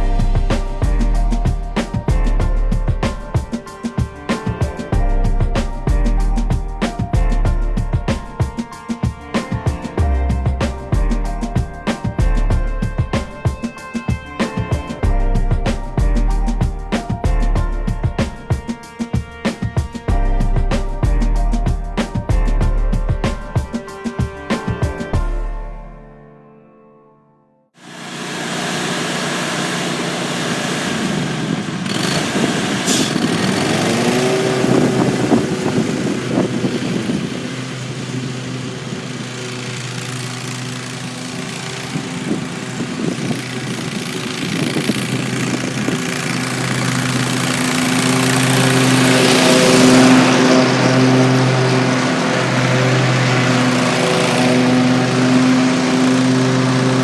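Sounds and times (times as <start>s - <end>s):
mower engine drone: 0.0s - 8.6s, 9.4s - 13.8s, 14.4s - 18.6s, 20.1s - 23.9s, 27.8s - 57.0s.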